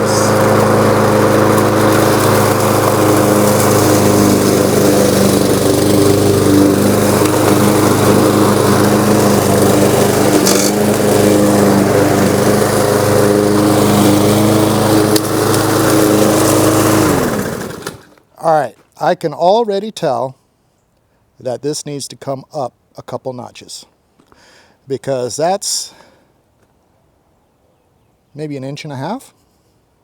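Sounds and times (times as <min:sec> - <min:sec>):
lawn mower engine running: 0:00.0 - 0:18.3.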